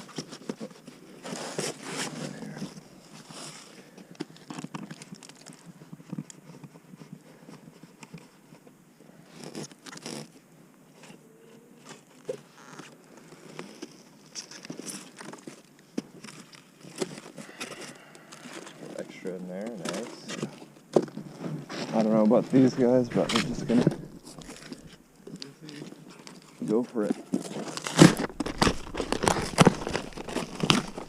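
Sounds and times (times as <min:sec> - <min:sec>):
hands scraping in a beehive: 0:19.6 - 0:26.6, 0:27.3 - 0:31.0.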